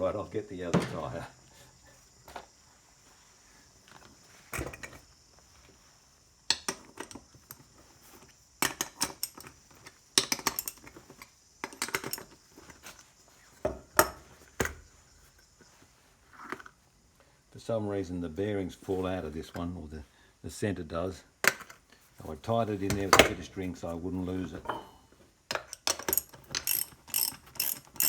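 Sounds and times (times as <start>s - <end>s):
metal tools clattering on workbench: 0.7s - 1.3s, 8.6s - 12.9s, 24.6s - 28.0s.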